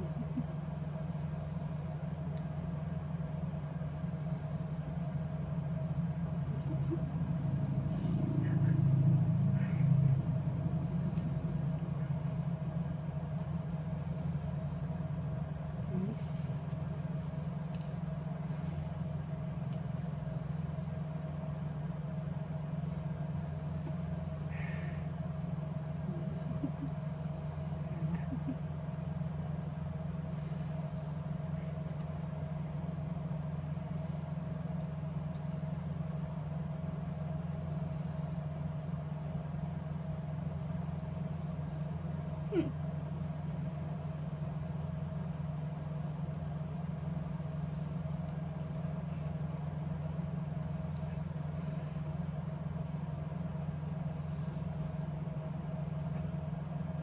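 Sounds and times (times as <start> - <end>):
faint steady whine: 0.0 - 57.0
low mechanical hum: 0.0 - 57.0.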